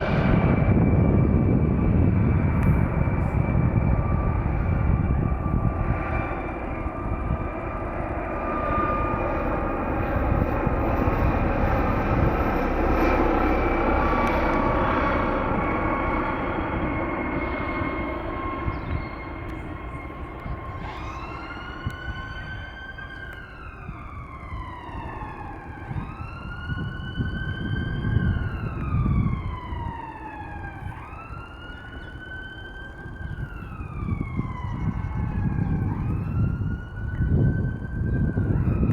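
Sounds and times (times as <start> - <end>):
steady low rumble: 0.0 - 30.0
emergency siren wailing: 0.0 - 38.9.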